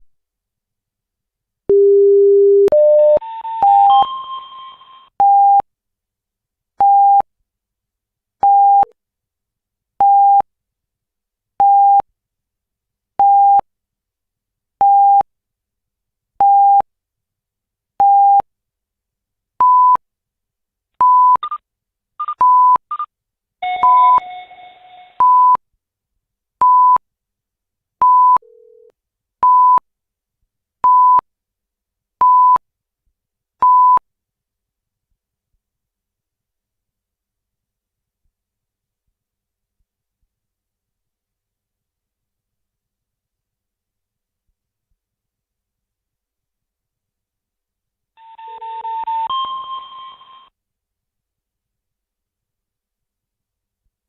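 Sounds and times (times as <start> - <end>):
electronic beeps: 2.8 - 5.0, 23.6 - 25.3, 48.2 - 50.5
high chime-like tones: 3.2 - 5.1, 23.6 - 25.2, 48.2 - 50.5.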